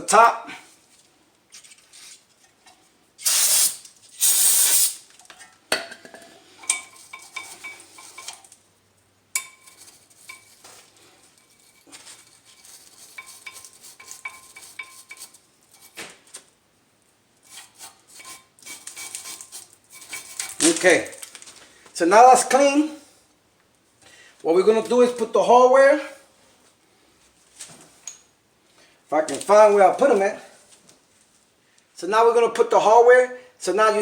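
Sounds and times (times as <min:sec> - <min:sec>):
aerosol spray hissing: 0:03.2 - 0:05.0
scraping and rubbing metal: 0:09.5 - 0:16.0, 0:17.4 - 0:21.2.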